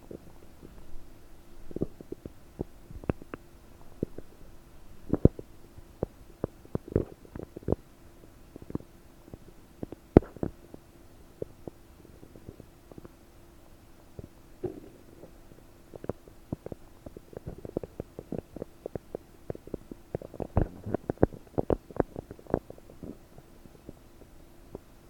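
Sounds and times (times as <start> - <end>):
stomach gurgling: 1.7 - 3.4, 5.1 - 7.9, 8.5 - 10.8, 14.2 - 24.9.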